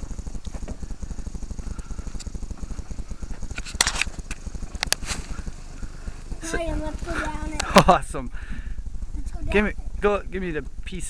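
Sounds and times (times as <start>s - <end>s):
sharp clatter: 0.0s - 7.9s
engine low pulsing: 0.0s - 11.0s.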